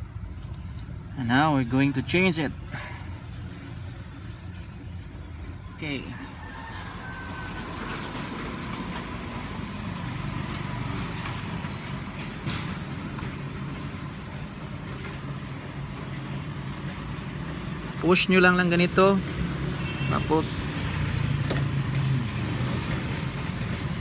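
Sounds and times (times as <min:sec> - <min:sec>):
motor vehicle rumble: 0:00.0 - 0:24.0.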